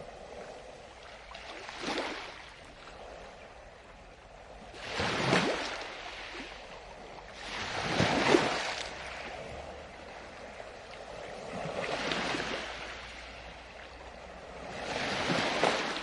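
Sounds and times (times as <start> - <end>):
water washing and sloshing: 7.3 - 16.0.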